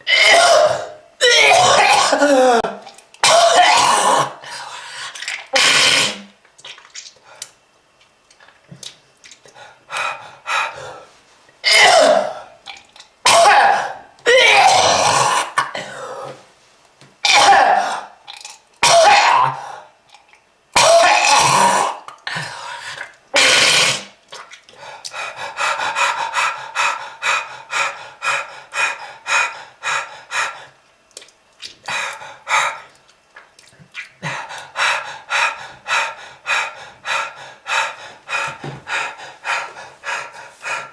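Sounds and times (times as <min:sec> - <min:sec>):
person coughing: 0:00.1 - 0:04.4, 0:11.6 - 0:12.4, 0:13.3 - 0:16.2.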